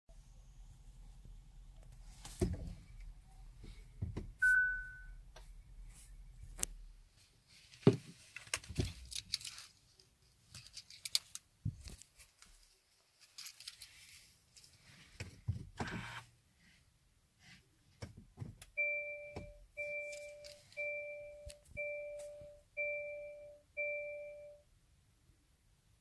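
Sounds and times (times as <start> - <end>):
short high electronic beep: 4.4 - 5.2.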